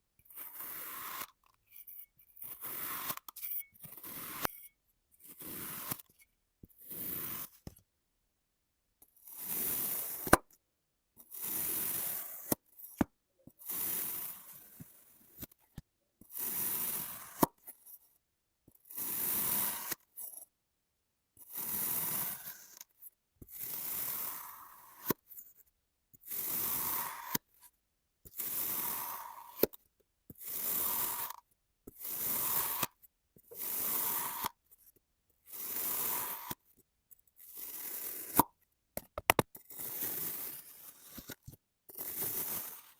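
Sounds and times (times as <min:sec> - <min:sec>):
blade slicing kinetic sand: 0:00.2 - 0:01.4, 0:02.4 - 0:04.6, 0:05.2 - 0:06.2, 0:06.8 - 0:07.7, 0:09.3 - 0:10.5, 0:11.3 - 0:15.6, 0:16.3 - 0:17.6, 0:18.8 - 0:20.2, 0:21.4 - 0:22.9, 0:23.5 - 0:25.3, 0:26.2 - 0:27.6, 0:28.3 - 0:29.8, 0:30.4 - 0:34.6, 0:35.5 - 0:36.7, 0:37.4 - 0:42.9.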